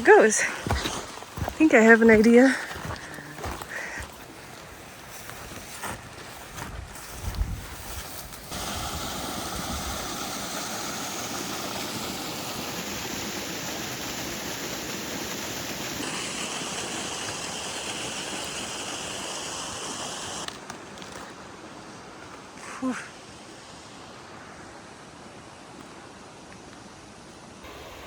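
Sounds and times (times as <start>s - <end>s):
waterfall cascading: 8.5s - 20.5s, 27.6s - 28.0s.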